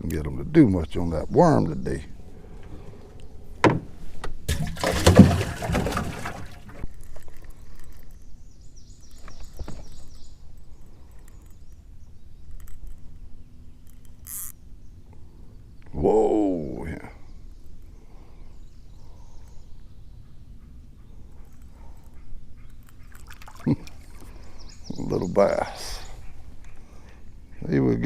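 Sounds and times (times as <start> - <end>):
splashing and rustling: 4.4 - 7.4, 23.1 - 24.4
water sloshing: 4.4 - 7.4, 23.0 - 24.6.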